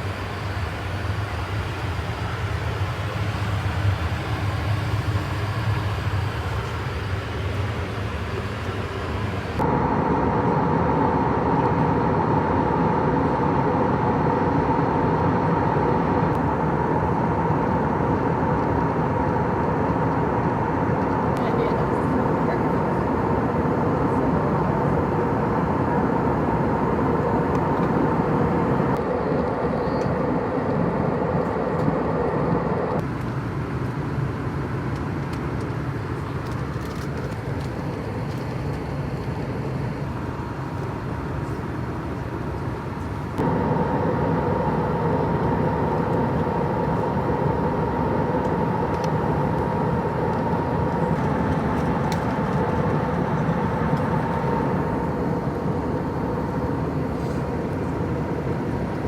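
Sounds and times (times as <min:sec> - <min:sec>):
aircraft cabin roar: 0:00.0 - 0:59.0
faint steady hum: 0:00.0 - 0:59.0.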